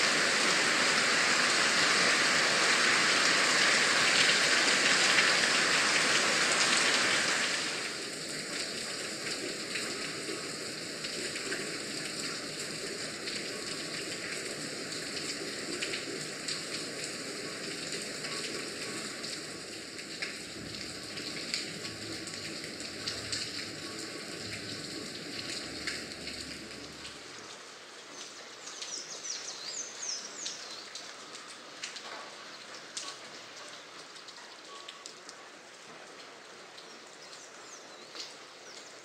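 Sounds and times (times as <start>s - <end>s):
rain falling: 0.0s - 39.0s
raindrops ticking: 7.8s - 39.0s.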